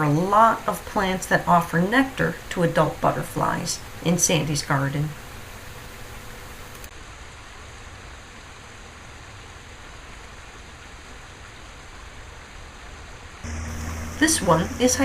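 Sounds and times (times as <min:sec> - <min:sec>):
waterfall rushing: 0:13.4 - 0:15.0.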